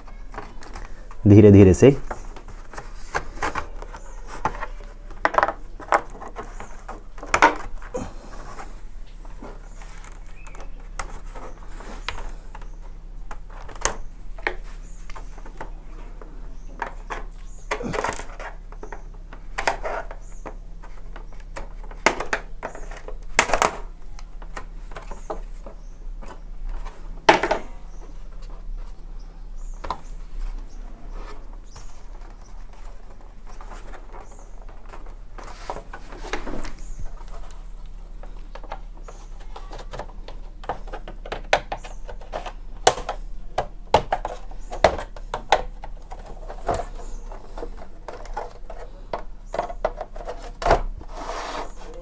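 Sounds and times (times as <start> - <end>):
plastic creaking: 0.0 - 8.7, 29.7 - 51.0
plastic cover clicking and scraping: 31.2 - 52.0.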